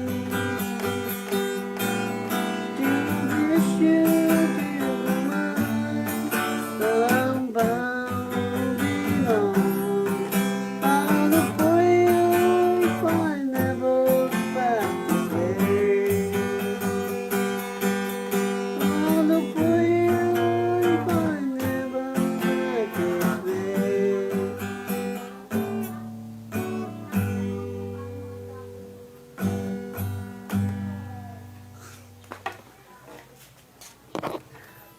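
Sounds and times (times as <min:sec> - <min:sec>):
acoustic guitar strumming chords: 0:00.0 - 0:32.2
sliding guitar melody: 0:00.0 - 0:32.2.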